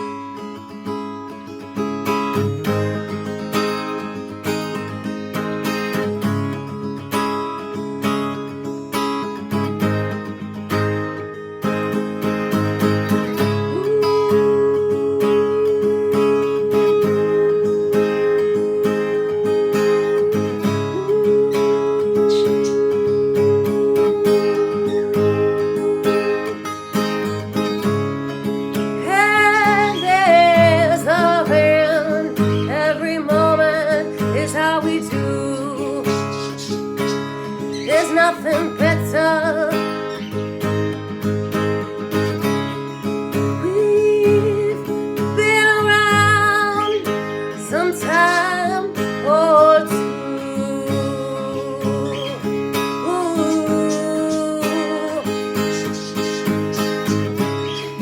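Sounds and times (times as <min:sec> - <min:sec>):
strummed acoustic guitar: 0:00.0 - 0:58.0
person singing: 0:13.5 - 0:27.2, 0:29.0 - 0:40.2, 0:43.5 - 0:56.1
wavering held melody notes: 0:13.6 - 0:27.9.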